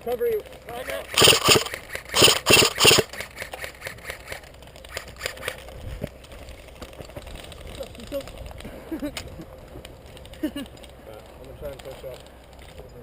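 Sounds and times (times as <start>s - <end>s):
airsoft rifle firing bursts: 1.2s - 4.2s.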